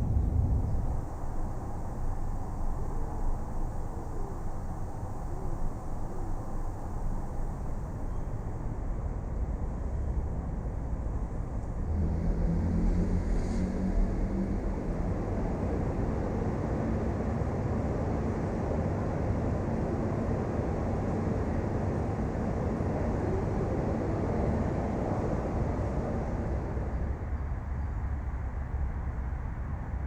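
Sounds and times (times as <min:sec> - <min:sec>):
distant traffic rumble: 0:00.0 - 0:08.8.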